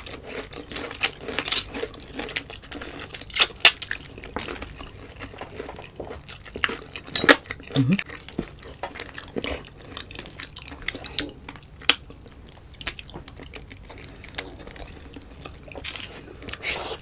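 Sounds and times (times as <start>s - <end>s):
person chewing and mouth smacking: 4.2s - 8.1s.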